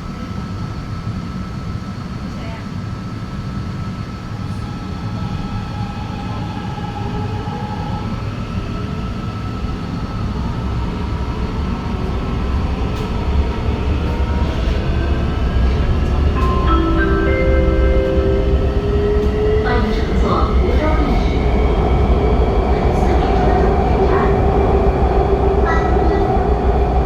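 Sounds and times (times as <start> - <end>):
train running rumble: 0.0 - 27.0.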